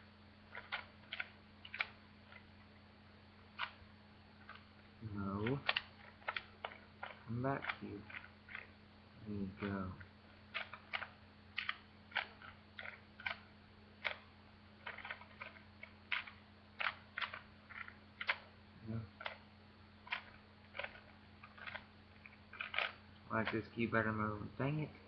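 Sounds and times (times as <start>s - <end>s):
speed cube layers clicking: 0.5s - 2.5s, 3.6s - 3.8s, 4.4s - 4.7s, 5.4s - 8.7s, 9.6s - 18.5s, 19.2s - 19.4s, 20.0s - 23.7s.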